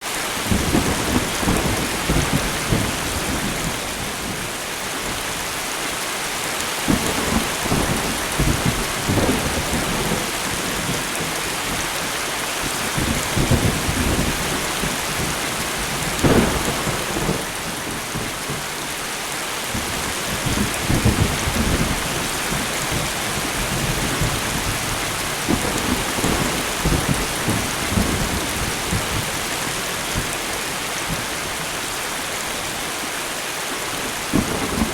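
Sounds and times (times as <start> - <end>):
rumbling thunder: 0.4 - 4.5, 6.8 - 11.8, 12.6 - 18.8, 19.7 - 31.5, 34.1 - 34.9
sharp thunder crack: 16.2 - 18.2.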